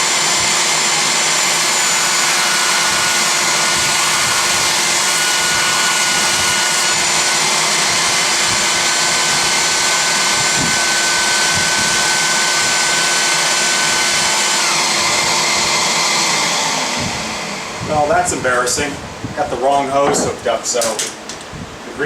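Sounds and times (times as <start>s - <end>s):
belt sander sanding wood: 0.0s - 19.0s
vacuum running: 0.0s - 20.4s.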